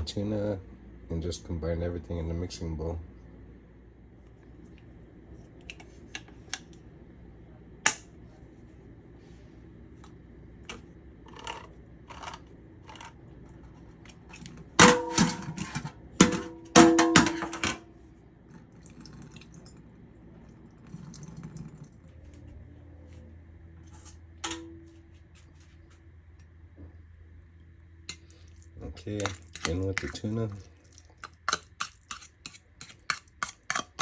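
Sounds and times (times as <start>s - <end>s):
metal kitchenware clinking: 14.8s - 17.9s, 24.0s - 25.0s.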